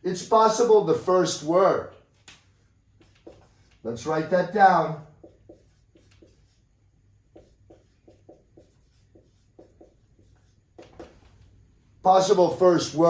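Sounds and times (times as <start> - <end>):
pen strokes on paper: 2.0 - 3.9, 4.6 - 11.4.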